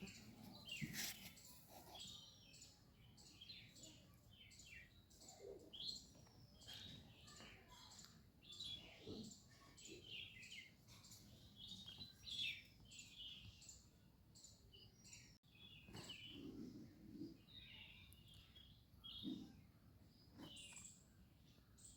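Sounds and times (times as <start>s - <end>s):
small birds chirping: 0.0s - 21.9s.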